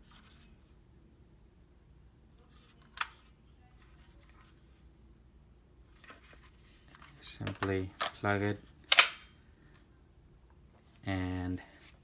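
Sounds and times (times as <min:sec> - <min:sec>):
sharp plastic click: 0:08.9 - 0:09.3.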